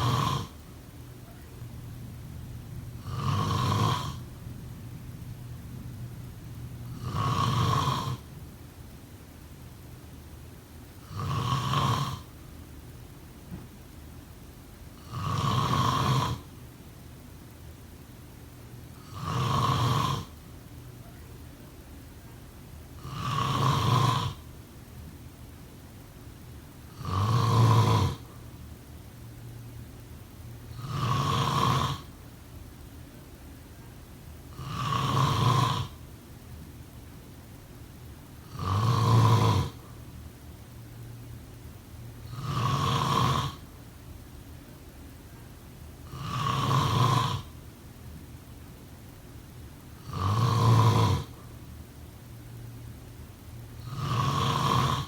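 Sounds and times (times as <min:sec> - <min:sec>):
rhythmic snoring: 0:00.0 - 0:08.5, 0:11.0 - 0:12.4, 0:14.8 - 0:16.6, 0:18.0 - 0:21.1, 0:22.0 - 0:24.6, 0:26.4 - 0:28.6, 0:29.2 - 0:32.8, 0:34.4 - 0:36.5, 0:37.2 - 0:44.6, 0:45.7 - 0:48.5, 0:49.8 - 0:51.7, 0:52.6 - 0:55.0
faint background hum: 0:00.0 - 0:55.0.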